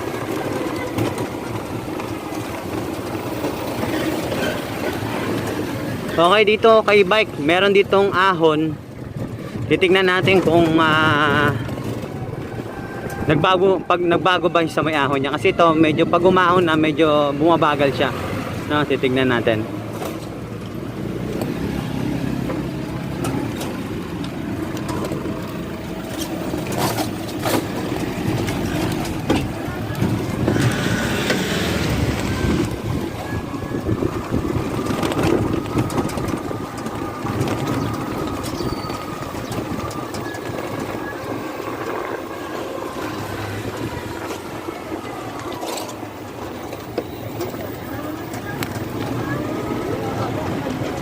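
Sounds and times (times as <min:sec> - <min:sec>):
electric bike motor rumble: 0:18.2 - 0:51.0.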